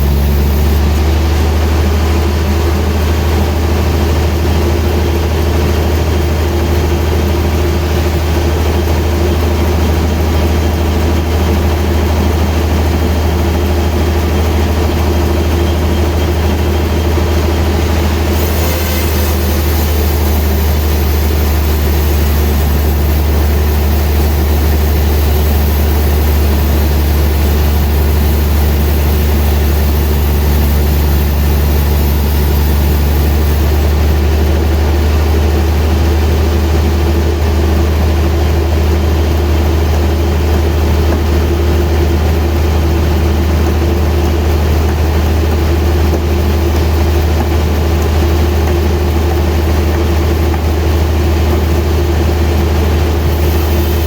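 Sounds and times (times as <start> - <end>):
bright hiss: 0.0 - 1.2, 17.8 - 34.4, 53.2 - 54.0
sawmill machinery drone: 0.0 - 54.0.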